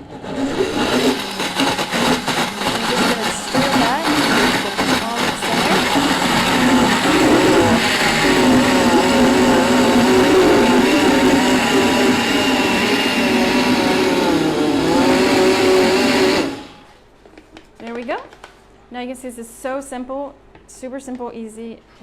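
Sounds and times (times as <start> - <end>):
blender motor running: 0.0 - 16.9.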